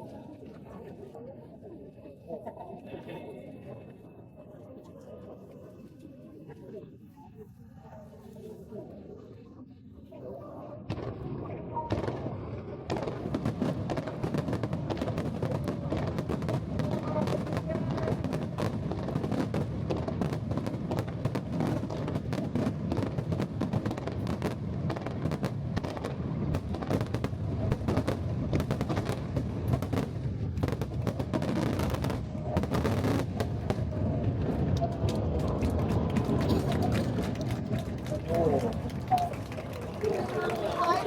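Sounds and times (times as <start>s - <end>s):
fireworks bangs and crackles: 10.8s - 41.0s.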